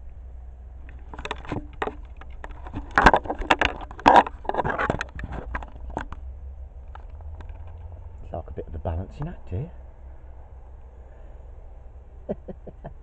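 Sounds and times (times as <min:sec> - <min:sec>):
low steady rumble: 0:00.0 - 0:13.0
rustling and knocking of handling: 0:00.9 - 0:06.2.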